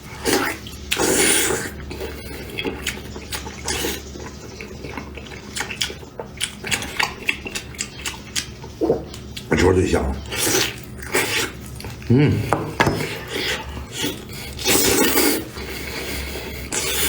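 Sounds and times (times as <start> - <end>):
wet chewing and sucking: 0.0 - 9.5, 10.2 - 12.2, 13.0 - 17.0.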